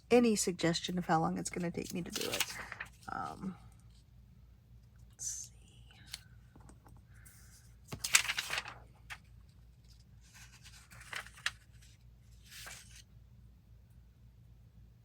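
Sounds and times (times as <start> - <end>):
paper rustling: 1.6 - 3.4, 6.1 - 13.1.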